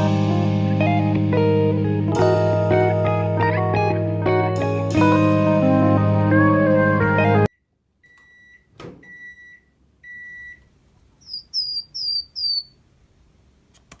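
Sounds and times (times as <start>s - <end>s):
microwave oven beeping: 7.5s - 10.7s
chick peeping: 11.2s - 12.8s.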